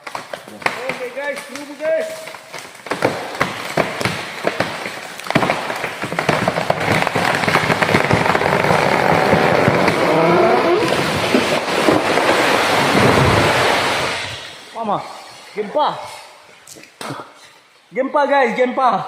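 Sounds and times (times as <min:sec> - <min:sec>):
tree trunk cracking: 0:00.0 - 0:14.6
tree crashing through branches: 0:00.0 - 0:14.8.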